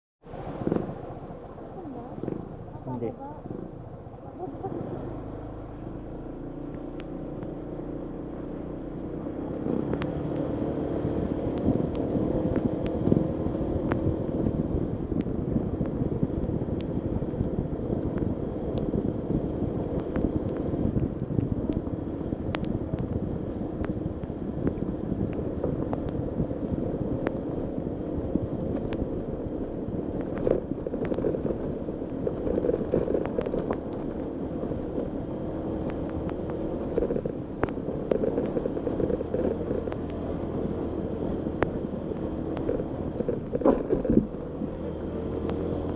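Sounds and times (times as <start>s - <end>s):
wind noise on microphone: 0.2s - 5.6s, 9.0s - 45.9s.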